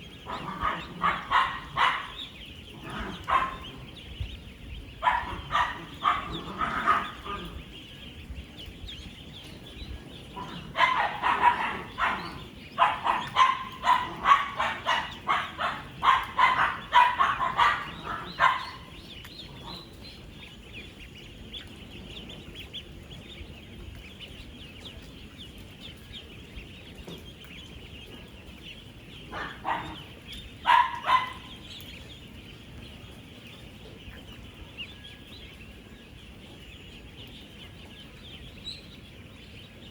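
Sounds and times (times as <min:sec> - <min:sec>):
ducklings peeping: 0:00.0 - 0:39.9.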